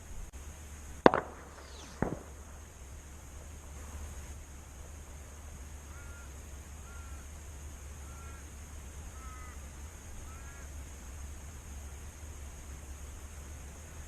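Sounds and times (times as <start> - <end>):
bird calling: 1.0 - 2.5, 5.7 - 10.8.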